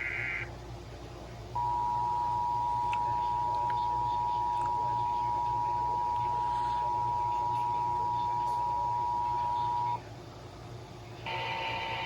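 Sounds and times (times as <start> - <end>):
radio hiss: 1.6 - 10.1, 11.1 - 12.0.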